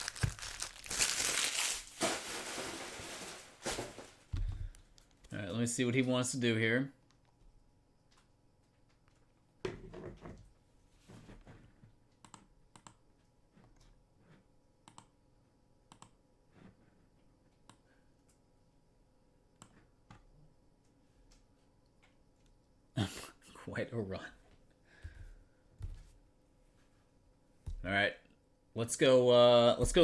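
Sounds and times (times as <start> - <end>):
handling noises: 0.0 - 5.2.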